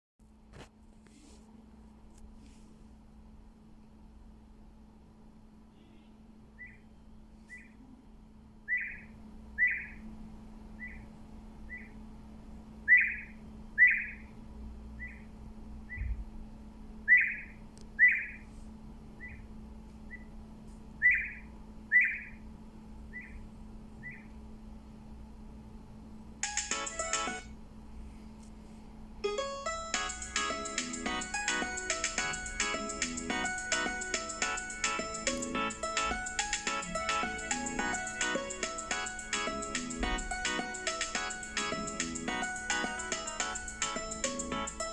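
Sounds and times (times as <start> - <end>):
ringtone high beeps: 26.4 - 27.5, 29.2 - 44.9
ringtone quick run of notes: 26.4 - 27.5, 29.2 - 44.9.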